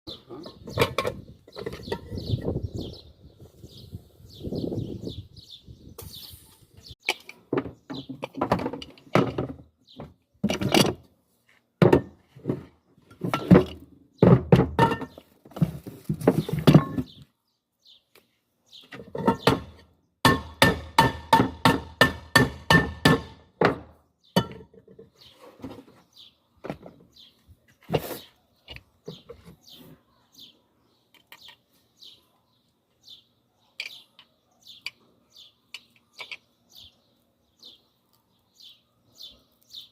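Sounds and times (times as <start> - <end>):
knocks and clanks on pressure cooker: 19.2 - 24.6.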